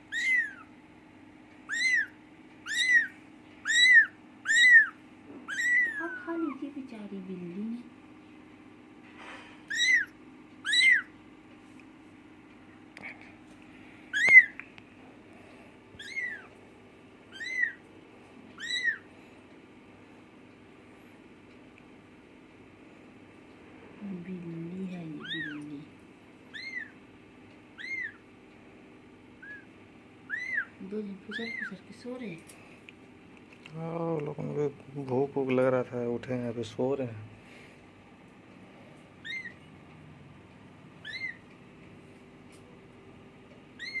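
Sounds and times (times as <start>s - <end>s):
kitten mewing: 0.1s - 0.7s, 1.7s - 6.6s, 9.7s - 11.1s, 14.1s - 14.6s, 16.0s - 16.5s, 17.3s - 17.8s, 18.6s - 19.1s, 25.2s - 25.6s, 26.5s - 27.0s, 27.8s - 28.2s, 39.2s - 39.7s, 41.0s - 41.4s.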